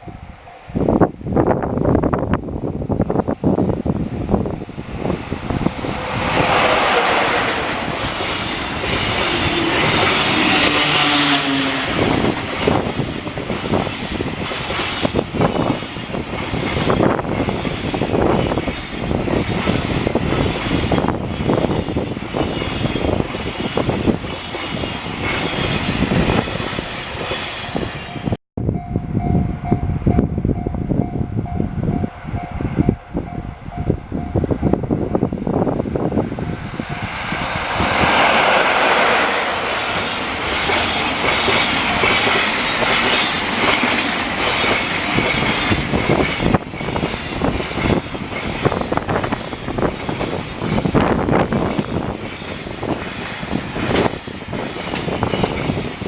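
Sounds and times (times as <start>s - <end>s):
train wheels clacking over rail joints: 37.6s - 56.0s.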